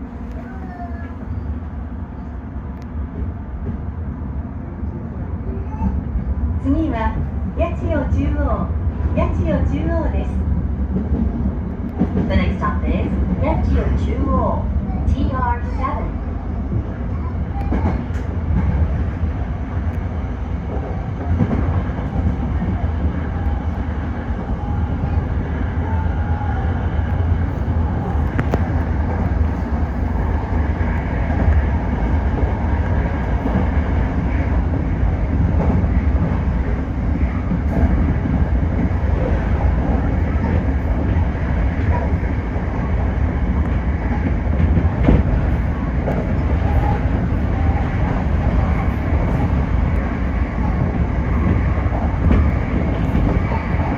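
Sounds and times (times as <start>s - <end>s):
train wheels rumbling on rail: 0.0s - 53.9s.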